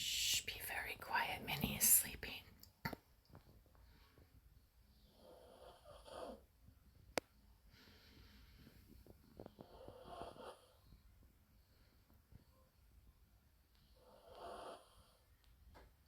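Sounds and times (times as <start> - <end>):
small dog snoring: 5.0 - 6.5, 9.4 - 10.9, 14.0 - 15.3.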